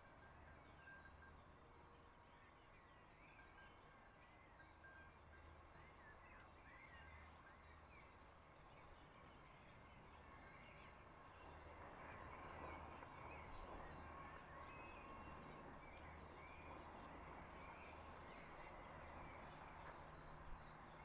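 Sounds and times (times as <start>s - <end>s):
songbirds chirping: 4.4s - 21.0s.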